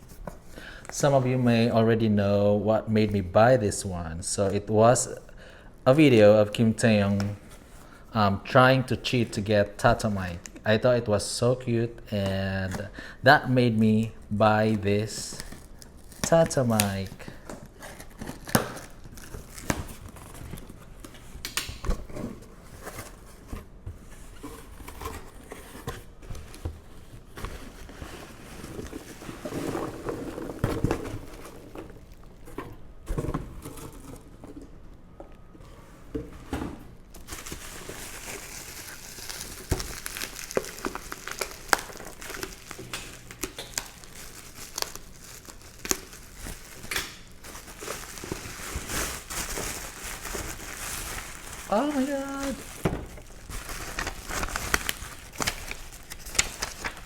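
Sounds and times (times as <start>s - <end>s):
packaging crinkling and rustling: 13.8s - 34.7s, 37.1s - 57.0s.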